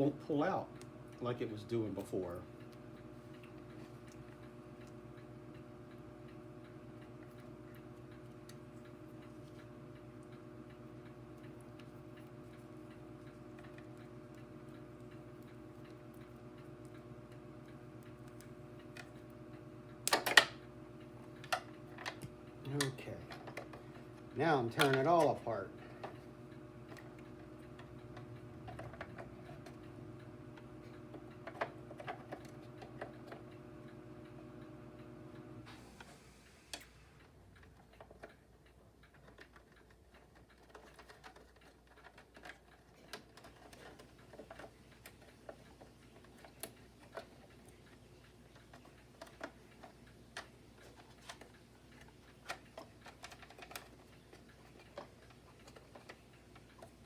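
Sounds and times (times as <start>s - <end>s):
low steady hum: 0.0s - 57.0s
light clicks and taps of tools: 36.7s - 57.0s.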